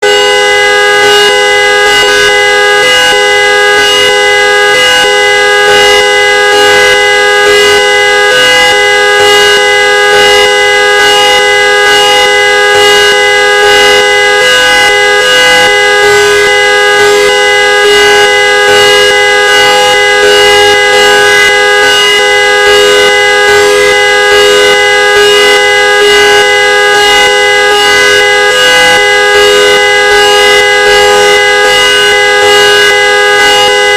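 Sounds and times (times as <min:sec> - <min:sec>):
trumpet car horn blaring: 0:00.0 - 0:33.9.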